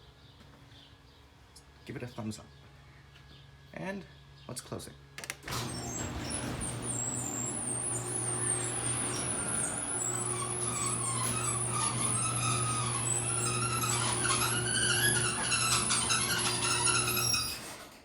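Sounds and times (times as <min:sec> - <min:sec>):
garage door opener motor hum: 0:05.2 - 0:18.0
high squeaks: 0:05.6 - 0:17.9.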